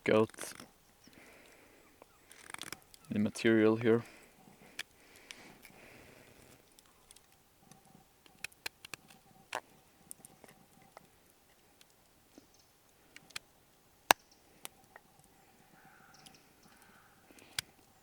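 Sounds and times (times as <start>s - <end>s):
knife carving wood: 0.0s - 0.8s, 2.0s - 3.1s.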